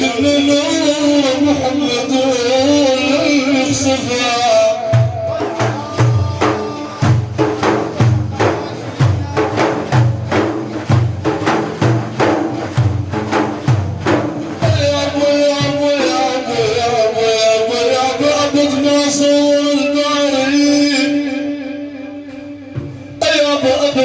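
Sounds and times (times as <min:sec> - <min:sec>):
man singing: 0:00.0 - 0:10.5, 0:14.5 - 0:24.0
hand drum strokes: 0:04.9 - 0:16.2, 0:22.3 - 0:23.4.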